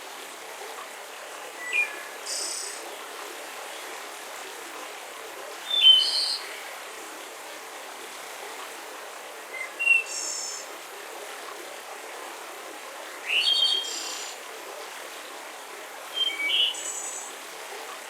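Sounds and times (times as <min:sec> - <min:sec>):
forest ambience hiss: 0:01.6 - 0:03.0, 0:05.6 - 0:07.0, 0:09.4 - 0:10.8, 0:13.2 - 0:14.5, 0:16.1 - 0:17.5.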